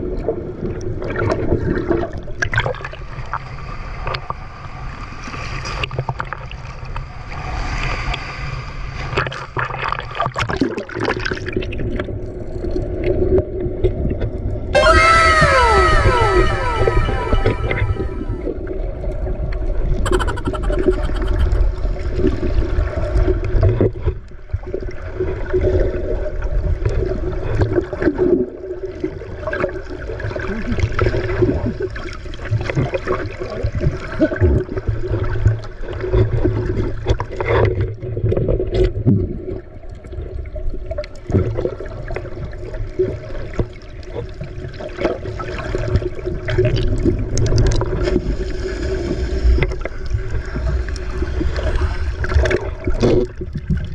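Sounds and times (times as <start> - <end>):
boat motor hum: 14.8 - 18.6, 20.1 - 21.8.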